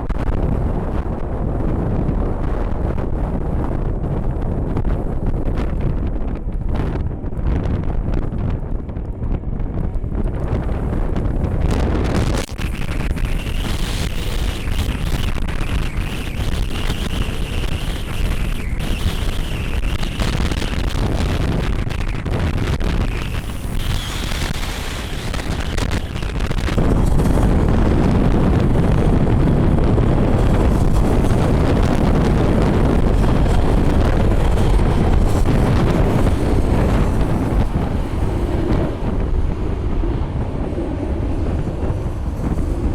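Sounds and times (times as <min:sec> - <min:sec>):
wind buffeting microphone: 0:00.0 - 0:42.9
jet engines whining: 0:11.6 - 0:42.9.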